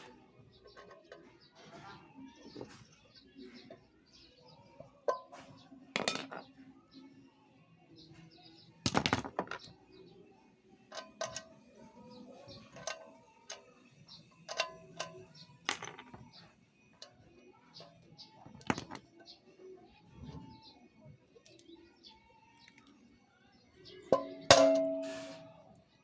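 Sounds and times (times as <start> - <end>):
metal tools clinking and knocking: 0.6 - 2.9, 5.1 - 6.6, 8.9 - 9.7, 10.9 - 19.4, 24.0 - 25.5.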